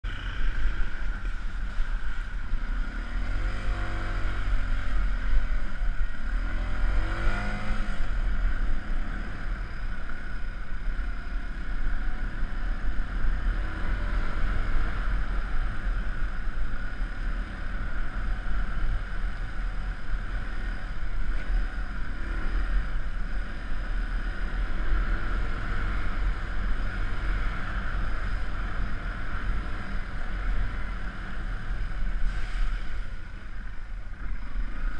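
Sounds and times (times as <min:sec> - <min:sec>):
motorcycle engine revving: 0:00.0 - 0:10.1.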